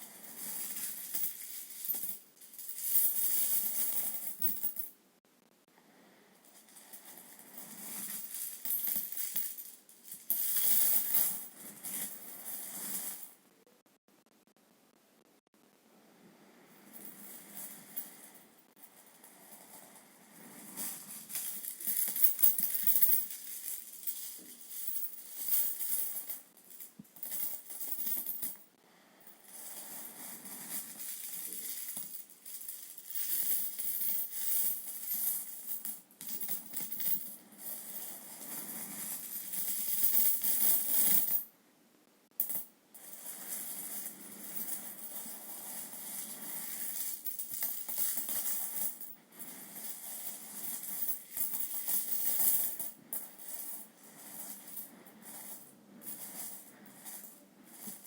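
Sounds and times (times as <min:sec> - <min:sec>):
coins jingling and clinking: 0:00.3 - 0:04.8, 0:07.6 - 0:13.3, 0:20.8 - 0:28.6, 0:30.0 - 0:41.4, 0:43.2 - 0:58.0.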